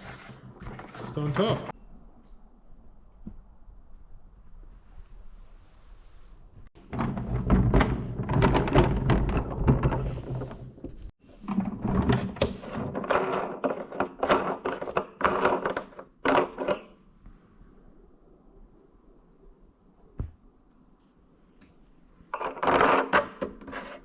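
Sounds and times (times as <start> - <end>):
parts knocking and rattling: 6.8 - 17.0.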